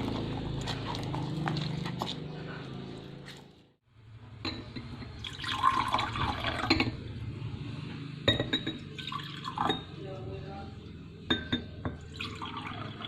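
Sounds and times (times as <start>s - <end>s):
liquid splashing and pouring: 0.0s - 2.2s, 12.1s - 13.0s
glass clinking: 4.4s - 5.8s, 6.4s - 7.0s, 8.3s - 10.0s, 11.3s - 12.8s.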